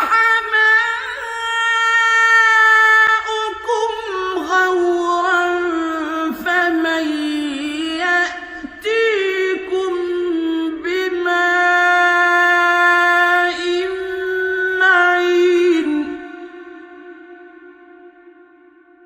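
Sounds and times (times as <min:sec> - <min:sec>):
man chanting recitation: 0:00.0 - 0:18.6.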